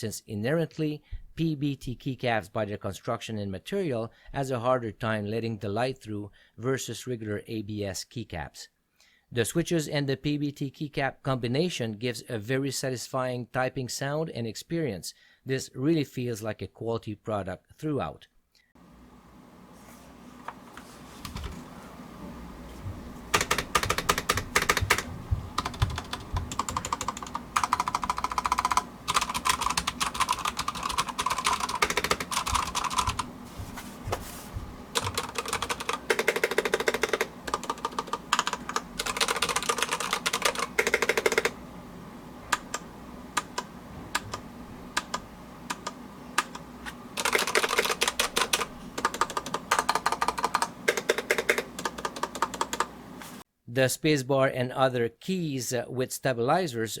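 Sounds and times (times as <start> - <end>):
mechanical keyboard typing: 23.3 - 33.3, 34.9 - 41.6, 43.4 - 44.4, 45.0 - 46.6, 47.2 - 52.9.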